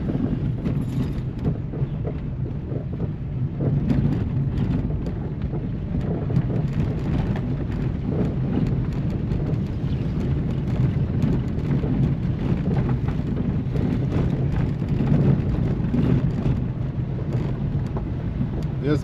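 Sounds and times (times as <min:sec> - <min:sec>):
vehicle rumbling on rough road: 0:00.0 - 0:19.0
short rattles and knocks: 0:00.2 - 0:03.1.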